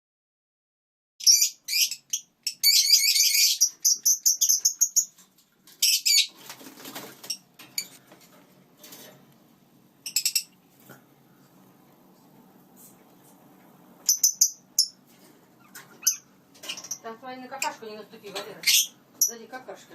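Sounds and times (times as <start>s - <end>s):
parakeets chirping and chattering: 1.2s - 9.3s, 9.9s - 10.9s, 13.9s - 19.9s
rustling noise: 11.5s - 13.7s.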